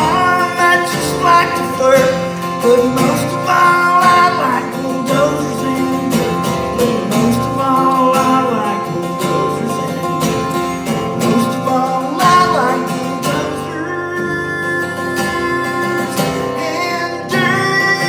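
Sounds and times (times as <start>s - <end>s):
acoustic guitar strumming: 0.0s - 18.0s
person singing: 0.0s - 18.0s.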